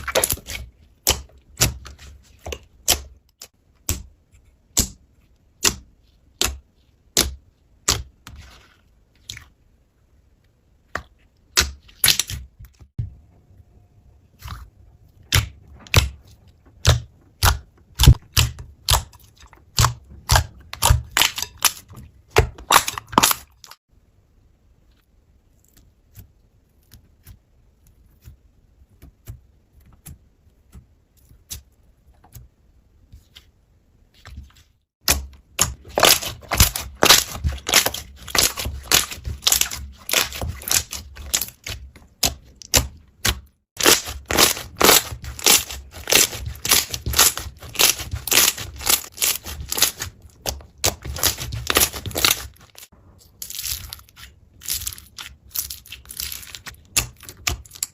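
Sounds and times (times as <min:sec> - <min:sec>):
slime squishing with crackling pops: 0:35.0 - 0:57.9.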